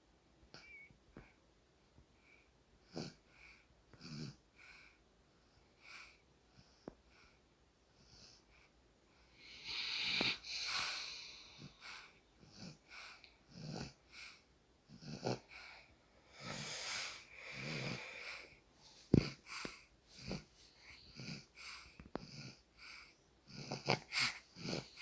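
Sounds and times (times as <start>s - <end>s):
soft wheezy snoring: 2.2s - 5.0s, 8.0s - 25.0s.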